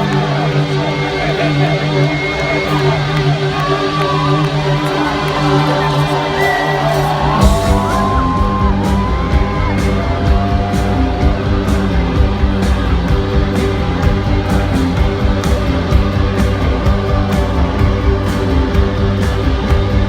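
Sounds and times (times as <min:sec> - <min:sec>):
bass and drums beat: 0:06.8 - 0:20.0.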